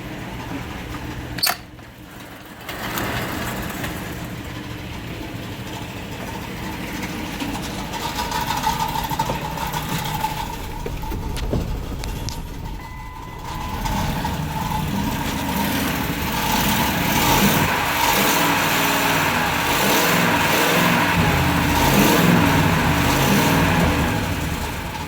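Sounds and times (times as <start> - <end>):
engine running with bad noise: 0.0 - 25.0
sharp click: 1.4 - 1.7
steady high tone: 9.0 - 25.0.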